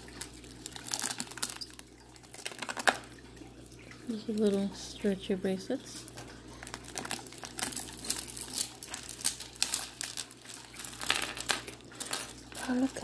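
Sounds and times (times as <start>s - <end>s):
jewelry rustling and clicking: 0.1s - 3.1s, 6.0s - 13.0s.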